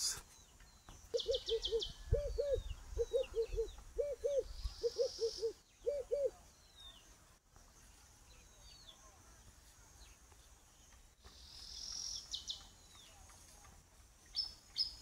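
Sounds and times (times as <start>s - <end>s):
small birds chirping faintly: 0.0s - 15.0s
dove cooing: 1.1s - 6.4s.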